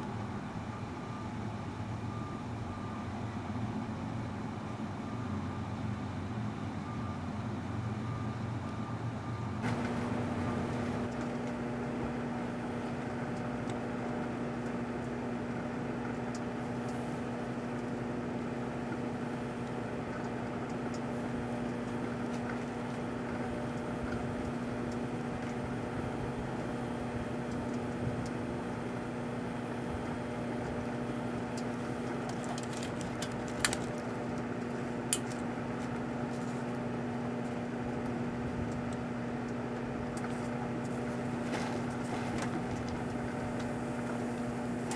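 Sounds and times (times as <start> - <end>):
microwave oven humming: 0.0 - 44.9.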